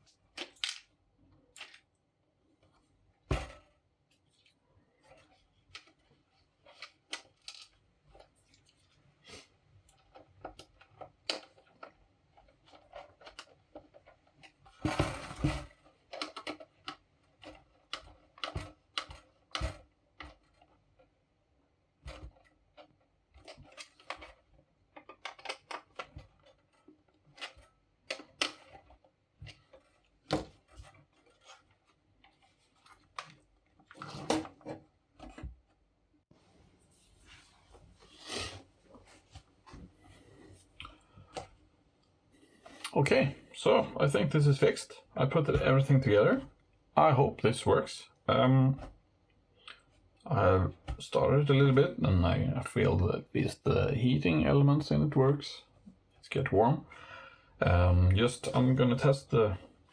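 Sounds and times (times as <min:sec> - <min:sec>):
plastic parts clicking and rattling: 0:00.0 - 0:02.0, 0:02.6 - 0:09.1, 0:09.8 - 0:21.2, 0:21.9 - 0:35.8
plastic parts clattering: 0:00.1 - 0:02.0, 0:05.0 - 0:08.9, 0:09.8 - 0:21.1, 0:22.0 - 0:35.6.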